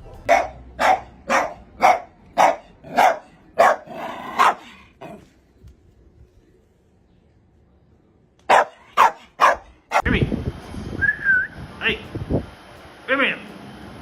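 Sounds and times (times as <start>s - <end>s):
dog barking: 0.3s - 5.2s, 8.5s - 10.1s.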